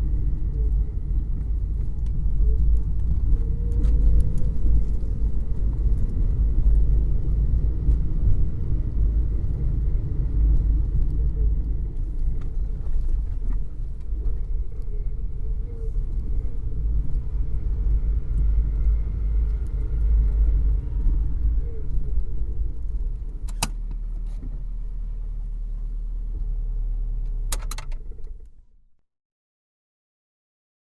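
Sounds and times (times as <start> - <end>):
car engine rumbling: 0.0 - 29.0
sharp clicks: 23.4 - 24.0, 27.5 - 28.5.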